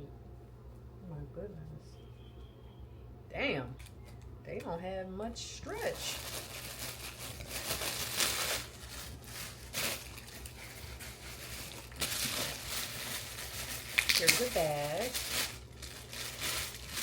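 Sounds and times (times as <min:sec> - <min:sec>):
plastic packaging crinkling: 0:05.6 - 0:17.0.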